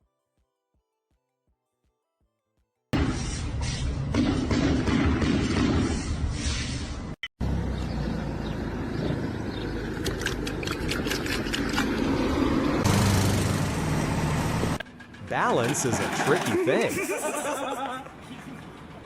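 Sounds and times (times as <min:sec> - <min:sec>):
engine low rumble: 0:07.4 - 0:15.4.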